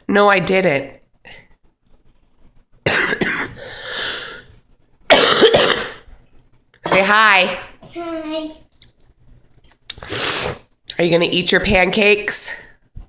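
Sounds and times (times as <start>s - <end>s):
person coughing: 2.9s - 3.6s, 5.1s - 6.1s.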